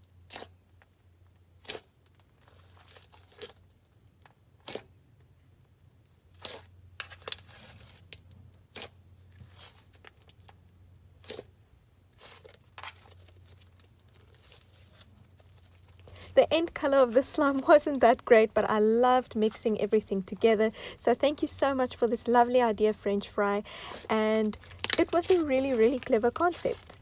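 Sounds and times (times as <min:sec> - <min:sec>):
low steady hum: 0:00.0 - 0:27.0
slime popping and crackling: 0:23.9 - 0:27.0.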